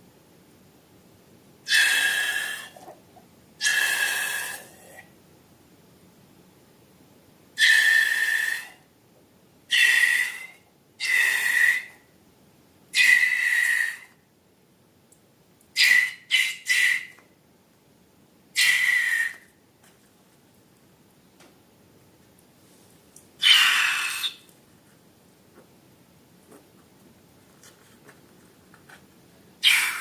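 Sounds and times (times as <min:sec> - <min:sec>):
balloon squealing air out: 0:23.4 - 0:24.4, 0:29.6 - 0:30.0.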